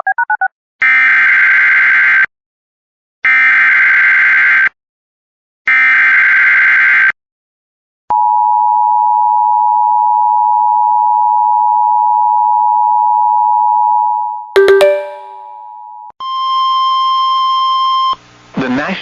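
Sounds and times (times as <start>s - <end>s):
brief electronic tone: 14.6s - 15.4s
two-tone attention signal: 14.6s - 15.4s.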